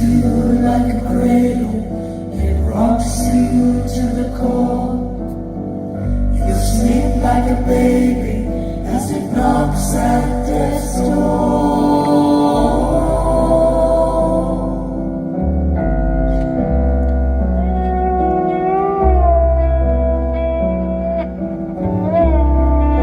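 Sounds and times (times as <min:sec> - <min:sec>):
guitar chords: 0:00.0 - 0:23.0
keyboard chords: 0:00.0 - 0:23.0
person singing: 0:06.2 - 0:15.4
backing singers: 0:06.4 - 0:15.2.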